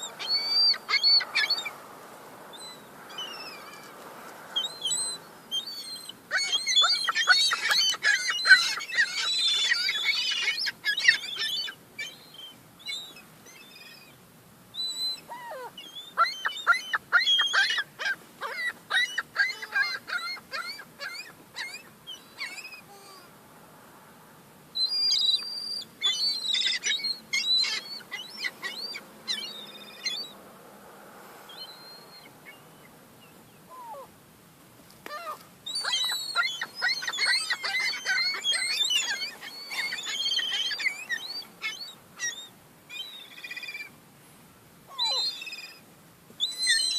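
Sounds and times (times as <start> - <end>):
young gulls squealing: 0.0 - 1.8, 4.6 - 14.2, 14.8 - 23.3, 24.8 - 30.4, 33.6 - 34.1, 35.1 - 44.0, 44.9 - 45.8, 46.4 - 46.9.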